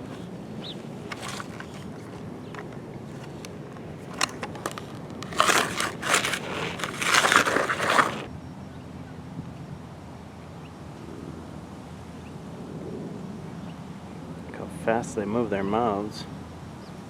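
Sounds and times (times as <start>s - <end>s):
gravel crunching and scraping: 0.0s - 8.3s.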